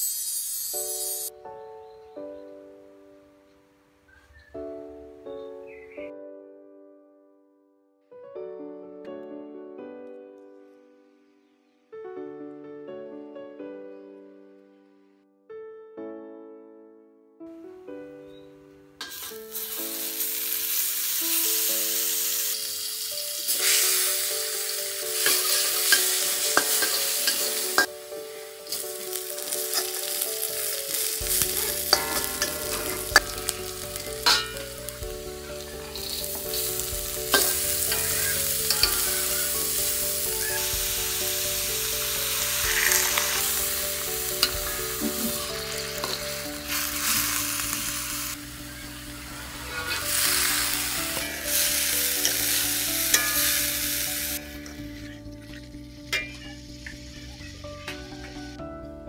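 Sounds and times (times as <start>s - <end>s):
food sizzling in oil: 0.0s - 1.3s, 19.0s - 58.6s
spatula scraping a pan: 19.0s - 19.7s, 23.5s - 27.9s, 28.6s - 40.1s, 42.0s - 48.0s, 49.4s - 55.1s, 56.1s - 57.0s.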